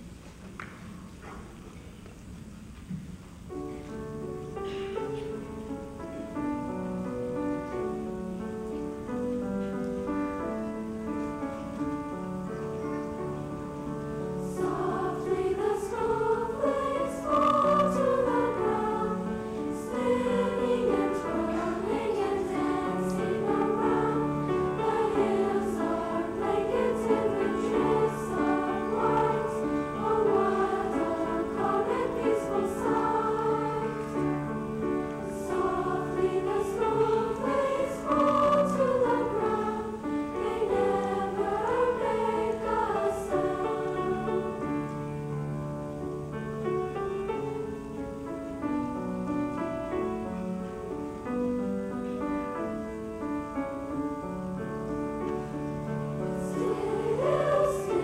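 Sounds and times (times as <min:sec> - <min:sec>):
piano accompaniment: 0:03.4 - 0:58.0
choir singing: 0:13.2 - 0:45.3, 0:55.4 - 0:58.0.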